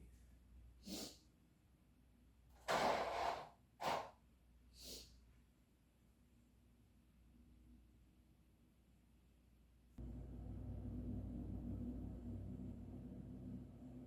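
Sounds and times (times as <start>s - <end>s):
person sniffing and blowing: 0.8s - 1.2s, 2.7s - 5.2s.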